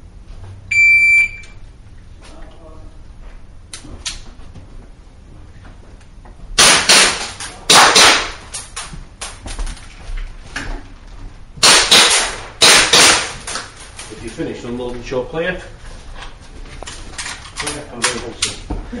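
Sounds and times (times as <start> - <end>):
pistol shots with room echo: 6.6 - 8.6, 11.6 - 13.4.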